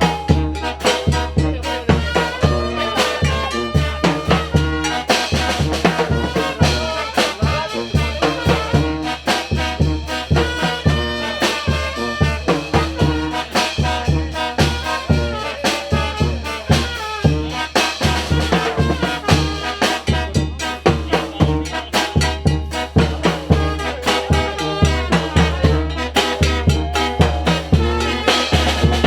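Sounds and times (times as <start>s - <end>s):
low bass notes: 0.0s - 7.0s, 18.4s - 29.0s
steady drum beat: 0.0s - 29.0s
trumpets and trombones: 0.0s - 29.0s.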